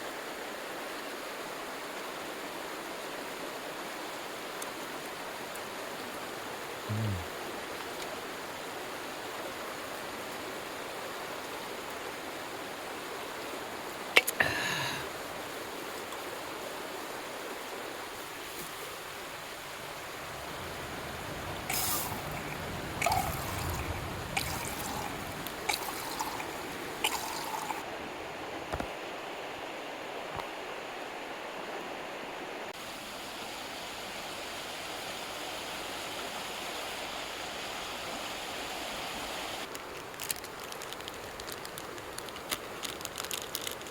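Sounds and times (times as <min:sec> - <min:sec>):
stream flowing: 0:00.1 - 0:30.2, 0:31.6 - 0:40.0
small clicks and knocks: 0:39.7 - 0:43.9.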